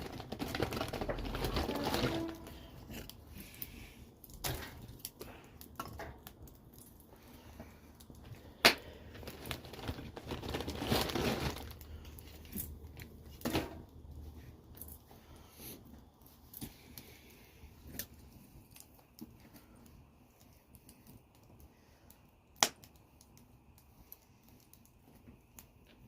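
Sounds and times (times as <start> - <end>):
wood fire crackling: 0.0 - 26.0.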